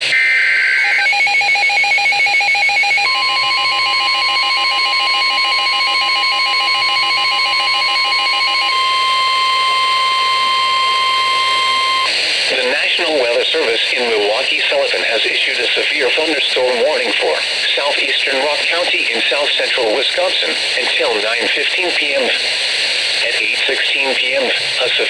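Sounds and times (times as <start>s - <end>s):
steady warning alarm tone: 0.0s - 13.3s
rapid pulsing electronic beep: 0.2s - 12.1s.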